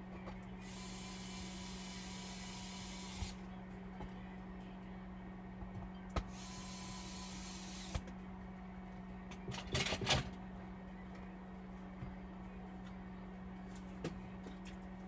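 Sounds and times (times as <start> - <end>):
small motor whirring: 0.6 - 3.4, 6.3 - 8.0.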